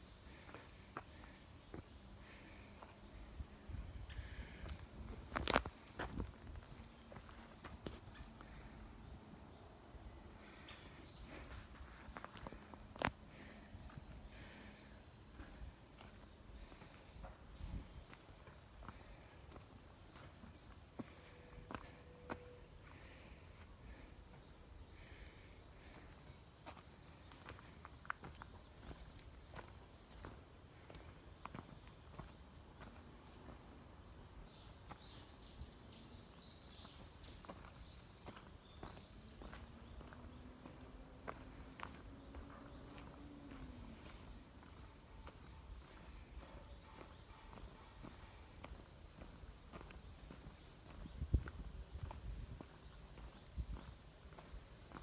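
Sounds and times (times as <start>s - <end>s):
high-pitched insect chorus: 0.0s - 55.0s
faint footsteps: 4.1s - 8.8s, 10.4s - 23.7s, 36.7s - 55.0s.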